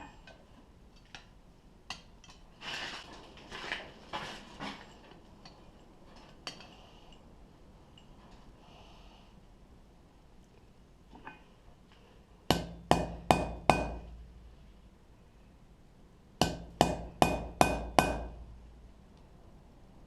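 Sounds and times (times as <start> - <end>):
hammer striking metal punch: 12.5 - 14.2, 16.4 - 18.4.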